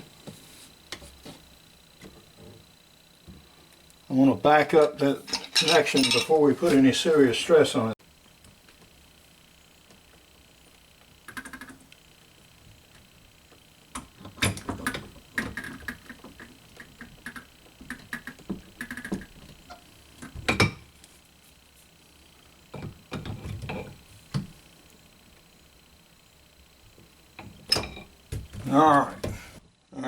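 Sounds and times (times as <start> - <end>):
wrenches clinking on metal valve: 4.8 - 6.4.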